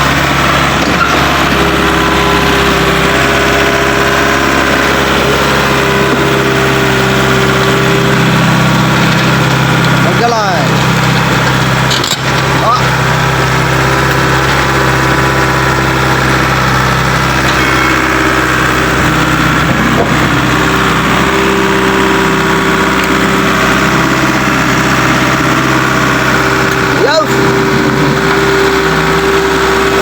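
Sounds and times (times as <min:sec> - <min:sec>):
diesel engine droning: 0:00.0 - 0:30.0
high steady whine: 0:17.2 - 0:20.6.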